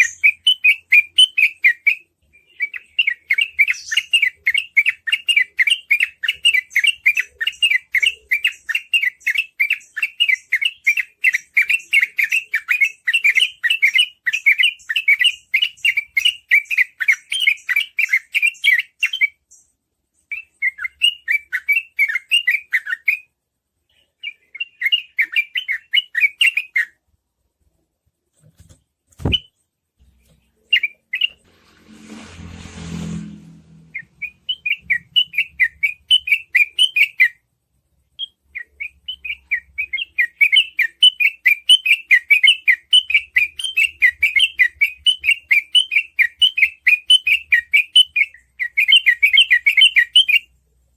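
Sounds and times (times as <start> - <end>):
bird singing fast chirps: 0.0 - 19.7, 33.6 - 37.4
brief rush of noise: 31.3 - 34.6.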